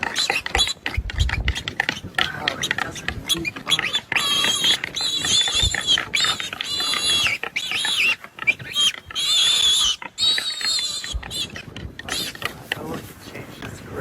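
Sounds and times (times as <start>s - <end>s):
wild boar squealing: 0.0s - 12.8s.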